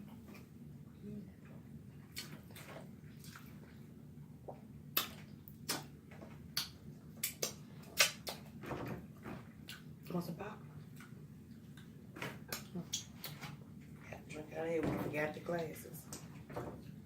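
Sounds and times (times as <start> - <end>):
steady low hum: 0.0 - 17.0
chewing and lip smacking: 2.1 - 3.8, 4.4 - 8.6, 9.6 - 10.1, 10.8 - 14.0.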